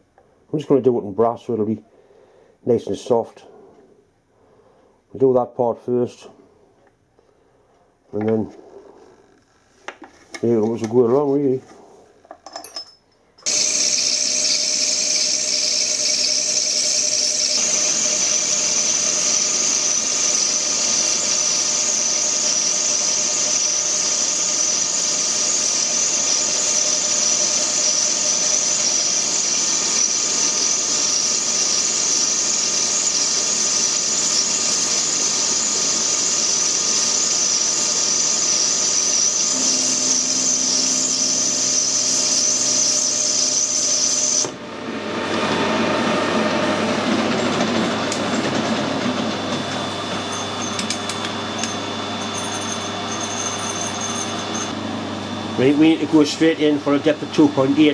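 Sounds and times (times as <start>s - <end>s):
metal lathe whining: 13.4s - 57.9s.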